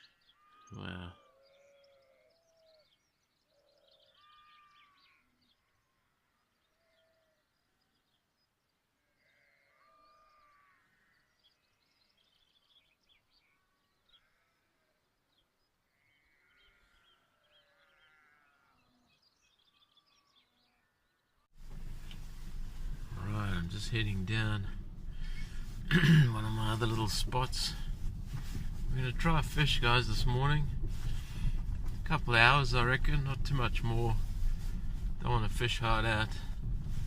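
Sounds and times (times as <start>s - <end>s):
small birds chirping: 0.0s - 37.0s
distant sheep bleating: 15.9s - 18.9s.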